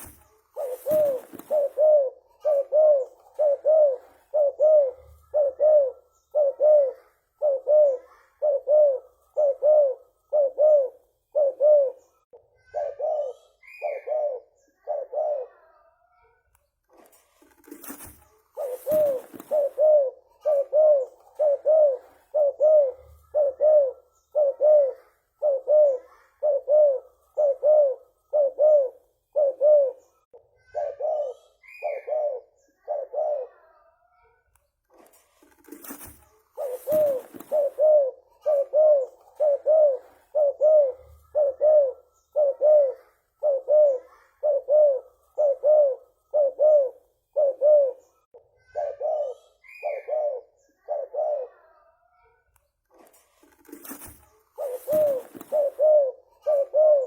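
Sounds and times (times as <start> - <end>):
brief rustling: 0.0 - 1.8, 16.9 - 19.8, 34.9 - 37.8, 52.9 - 55.9
dove cooing: 0.0 - 15.8, 17.5 - 34.0, 34.9 - 52.0, 52.9 - 57.0.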